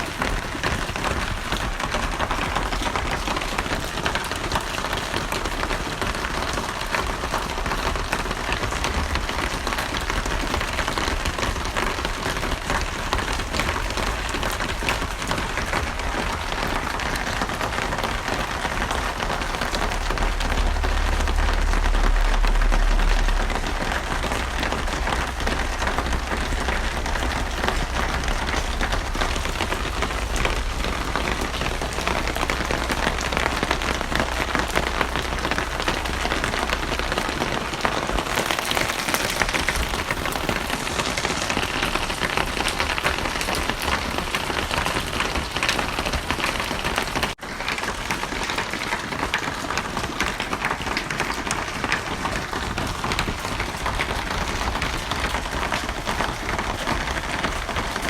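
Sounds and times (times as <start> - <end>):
heavy rain patter: 0.0 - 58.0
deep low rumble: 6.2 - 44.9.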